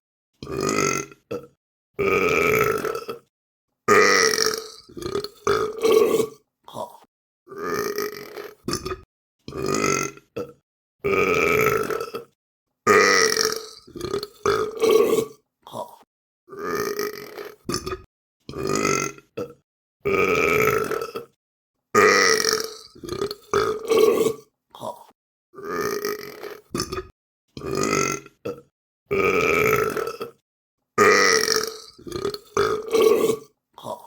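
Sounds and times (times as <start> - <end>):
person burping: 0.4 - 3.3, 3.9 - 21.4, 22.0 - 30.4, 31.0 - 34.0.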